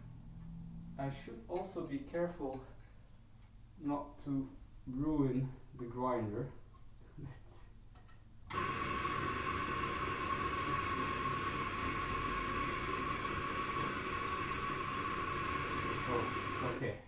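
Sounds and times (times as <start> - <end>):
electric coffee grinder whining: 8.5 - 17.0.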